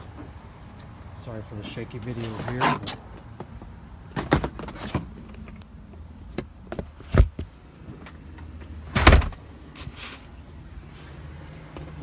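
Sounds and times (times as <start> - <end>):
dull thump: 8.9 - 9.4.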